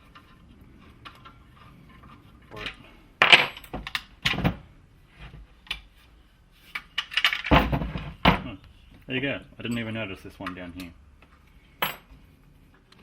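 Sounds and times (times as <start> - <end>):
metal parts clicking and knocking: 2.6 - 4.5, 6.7 - 8.0.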